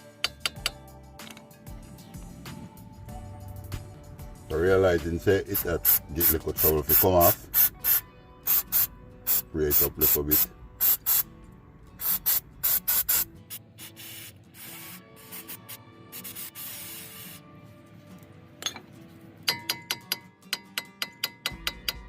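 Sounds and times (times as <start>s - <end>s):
aerosol can spraying: 5.4s - 11.3s, 12.0s - 17.4s
light ringing metallic taps: 19.5s - 22.0s.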